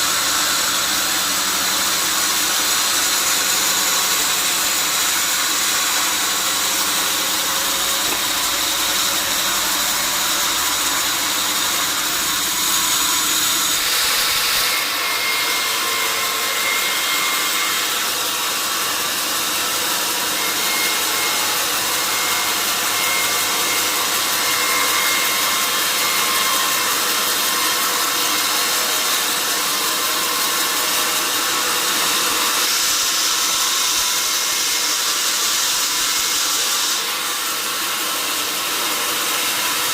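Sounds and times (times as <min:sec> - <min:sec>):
sawmill saw cutting wood: 0:00.0 - 0:39.9.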